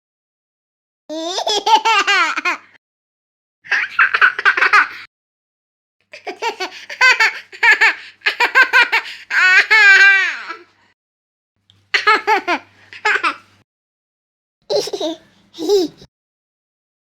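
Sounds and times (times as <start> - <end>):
baby laughing: 1.1 - 2.8, 3.7 - 5.1, 6.1 - 10.7, 11.9 - 13.6, 14.7 - 16.1.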